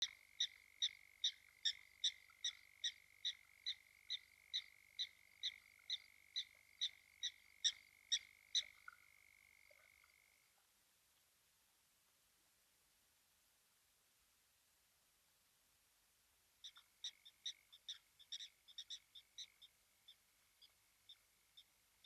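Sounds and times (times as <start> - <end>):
frog calling: 0.0 - 10.5, 16.6 - 21.7.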